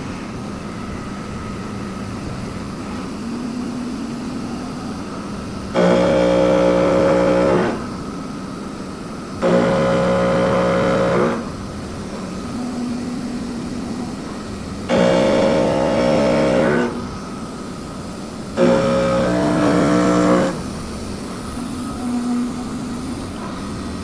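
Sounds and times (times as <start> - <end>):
machine running noise: 0.0 - 24.0
milling cutter ringing hum: 5.3 - 12.1, 14.7 - 21.0.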